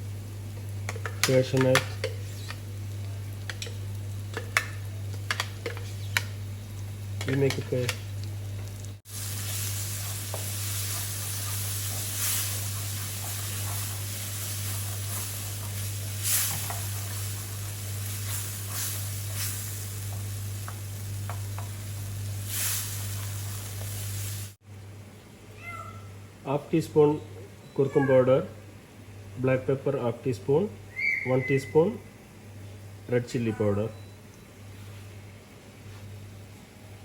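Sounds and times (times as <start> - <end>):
gravy sizzling in oil: 0.0 - 24.6.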